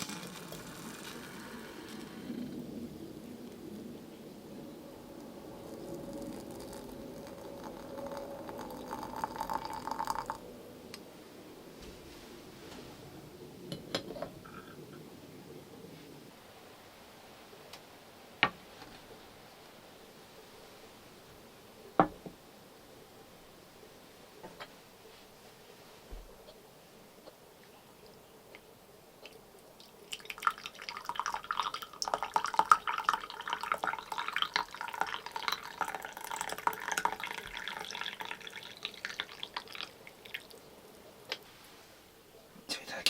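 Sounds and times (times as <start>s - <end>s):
water dripping and trickling: 0.0s - 11.0s, 29.2s - 41.4s
faint steady hiss: 0.0s - 43.0s.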